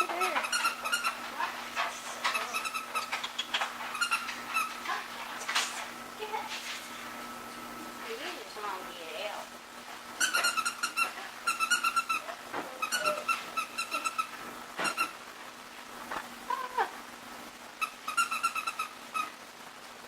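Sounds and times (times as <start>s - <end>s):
puppies whining and squeaking: 0.0s - 4.8s, 10.2s - 15.2s.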